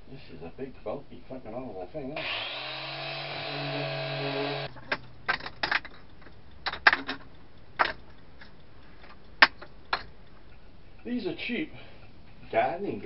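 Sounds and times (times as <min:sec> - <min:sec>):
electric drill running: 0:02.2 - 0:04.7
tools clicking and knocking: 0:04.7 - 0:10.6.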